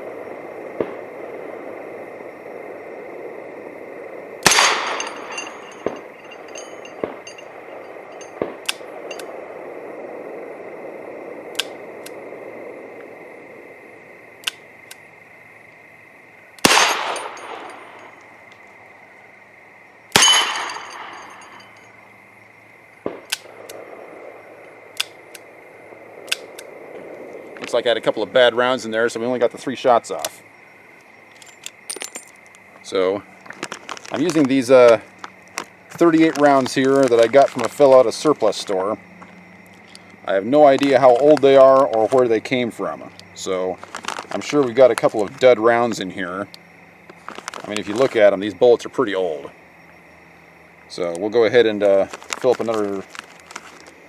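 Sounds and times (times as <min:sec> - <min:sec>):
revolver shots with ringing echo: 0:04.4 - 0:09.3, 0:16.6 - 0:18.1, 0:20.1 - 0:21.8.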